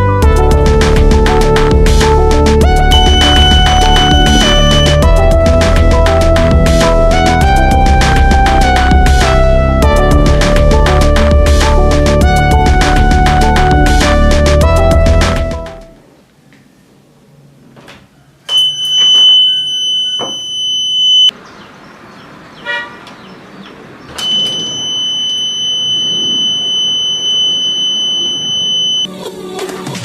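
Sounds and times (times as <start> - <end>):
high-pitched buzzer tone: 2.9 - 5.1, 18.5 - 21.3, 24.2 - 29.1.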